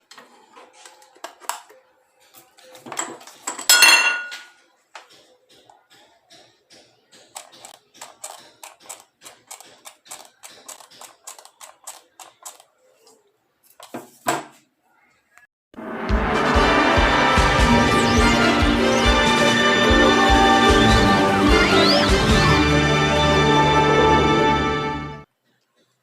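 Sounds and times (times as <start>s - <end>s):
metal parts clattering: 2.4s - 4.6s
ringing metal clang: 3.6s - 4.6s.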